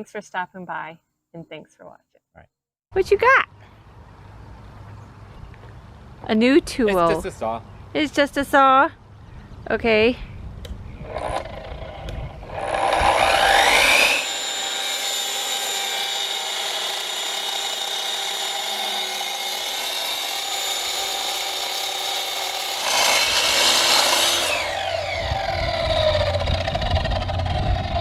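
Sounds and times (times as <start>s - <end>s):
electric saw cutting into stone: 11.0s - 28.0s.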